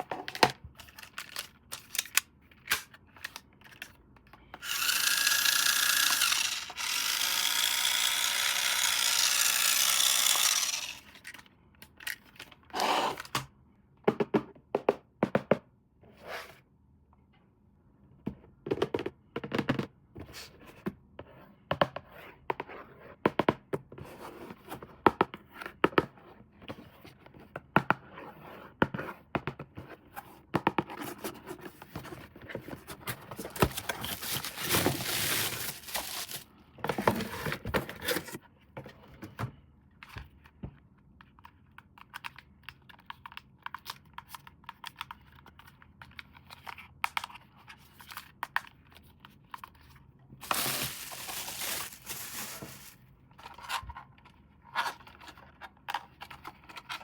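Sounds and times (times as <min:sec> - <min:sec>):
plastic packaging crinkling and tearing: 0:33.4 - 0:36.5, 0:50.4 - 0:53.0.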